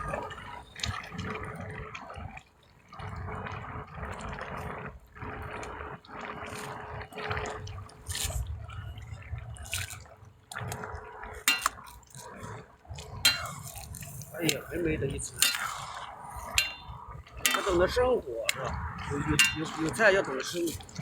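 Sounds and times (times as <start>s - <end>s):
water splashing and pouring: 5.2s - 21.0s.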